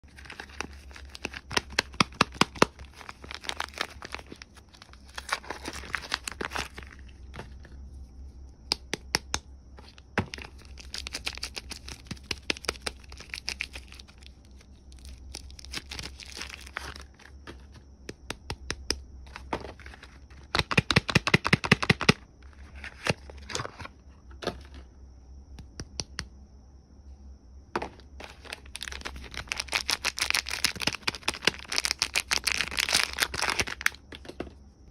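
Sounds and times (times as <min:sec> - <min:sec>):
soap wrapper crinkling and tearing: 0:00.1 - 0:07.1, 0:10.3 - 0:17.2, 0:28.2 - 0:34.0.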